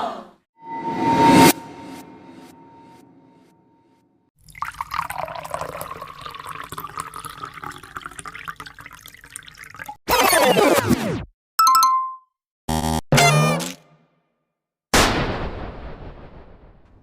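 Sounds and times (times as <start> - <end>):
water pouring into container: 4.4 - 10.0.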